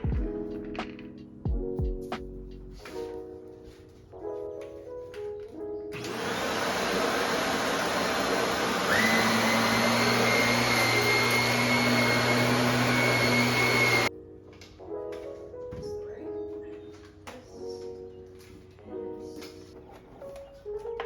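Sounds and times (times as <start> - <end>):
appliance motor whining: 6.0 - 14.1.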